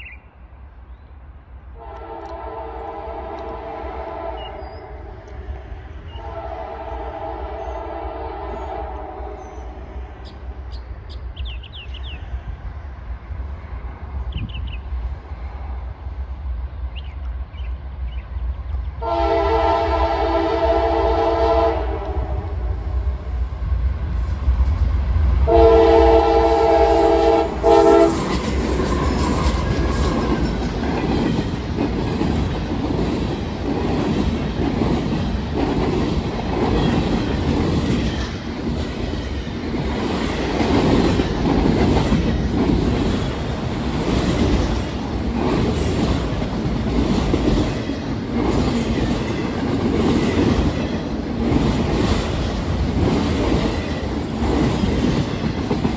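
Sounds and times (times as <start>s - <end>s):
train rumbling past: 0.0s - 55.9s
locomotive air horn: 1.8s - 4.6s, 6.2s - 9.4s, 19.0s - 22.6s, 25.5s - 28.4s.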